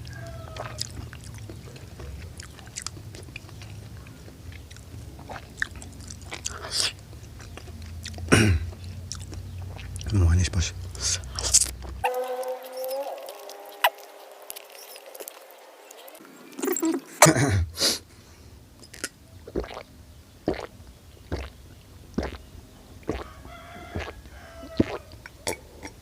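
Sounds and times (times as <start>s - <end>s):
chewing and lip smacks: 0.1s - 10.2s, 10.8s - 12.1s, 18.8s - 26.0s
short pitched call: 12.0s - 16.0s.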